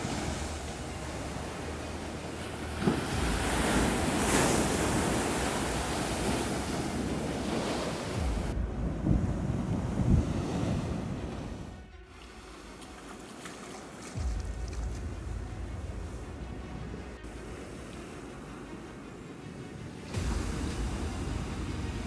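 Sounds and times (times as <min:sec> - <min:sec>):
wind buffeting microphone: 0:00.0 - 0:13.0
waves breaking on shore: 0:00.0 - 0:22.0.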